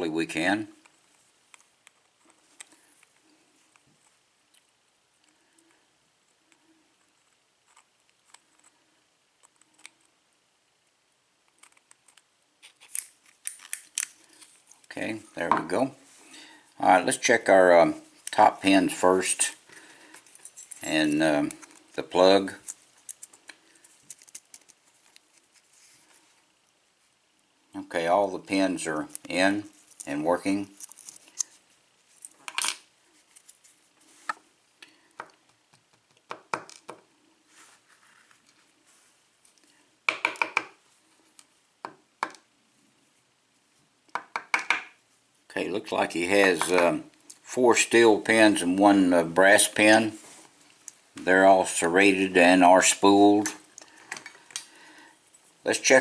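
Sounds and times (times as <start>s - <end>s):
metal lock parts clicking: 11.6s - 14.1s.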